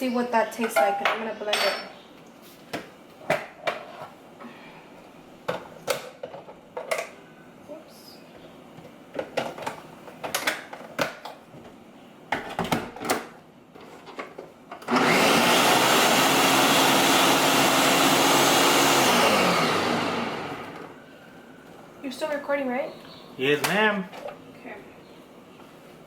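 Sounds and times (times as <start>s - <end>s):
blender running: 14.8s - 21.0s.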